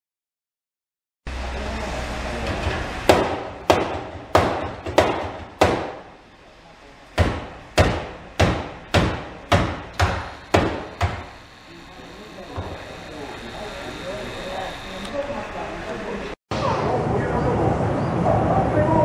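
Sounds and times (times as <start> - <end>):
hammer striking sheet metal: 2.4 - 6.1, 7.2 - 11.3.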